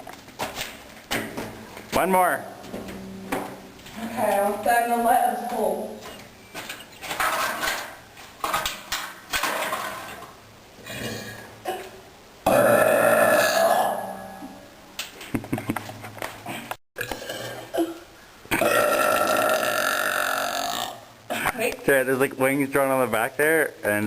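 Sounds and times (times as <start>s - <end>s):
person burping: 10.8s - 14.6s, 17.0s - 21.6s.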